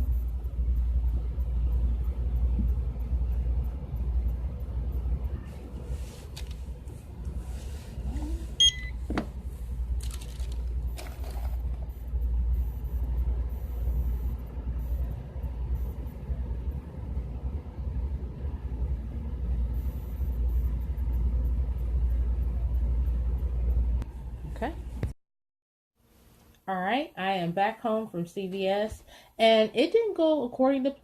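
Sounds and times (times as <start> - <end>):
low steady rumble: 0.0 - 25.1
short electronic beep: 8.6 - 9.0.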